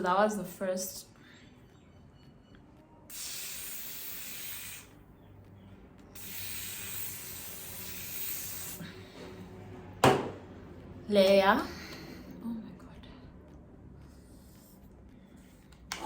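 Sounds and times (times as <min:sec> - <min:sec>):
aerosol spray can hissing: 0:03.1 - 0:05.0, 0:06.2 - 0:08.9.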